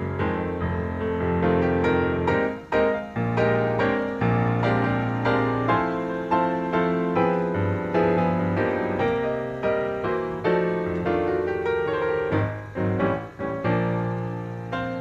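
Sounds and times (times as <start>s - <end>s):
gentle piano music: 0.0s - 15.0s.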